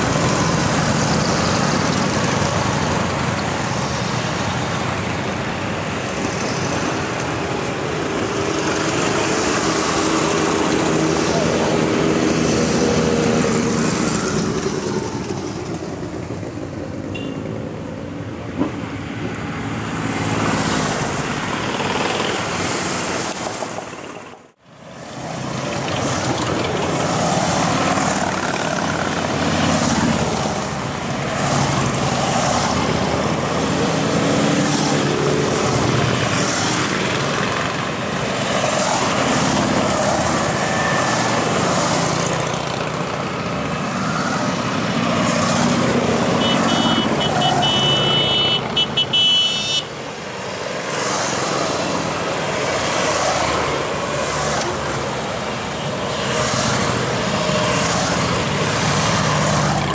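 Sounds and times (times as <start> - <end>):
motorcycles riding past: 25.1 - 48.0.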